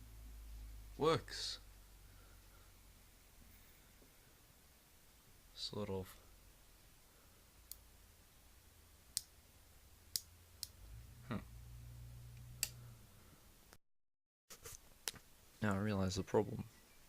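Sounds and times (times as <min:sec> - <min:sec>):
low hum: 0:09.6 - 0:13.5.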